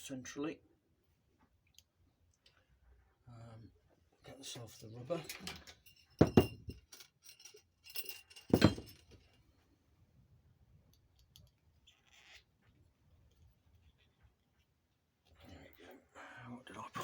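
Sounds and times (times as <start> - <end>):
metallic clink: 4.7 - 9.4
sharp knocks on workbench: 6.2 - 6.8, 8.5 - 8.9.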